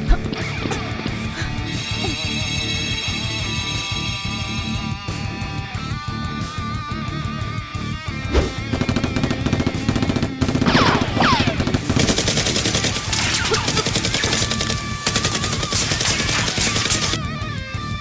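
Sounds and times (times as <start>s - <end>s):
background music: 0.0s - 18.0s
falling swoops: 8.3s - 8.7s
rapid automatic gunfire: 8.4s - 17.2s.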